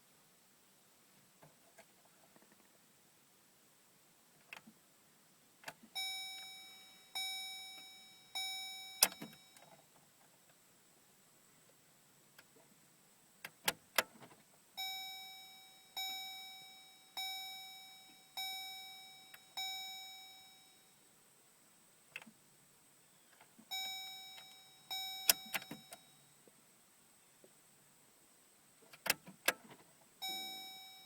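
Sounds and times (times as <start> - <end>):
car warning chime dinging: 5.9 - 9.7, 14.8 - 21.0, 23.7 - 26.3, 30.2 - 31.0.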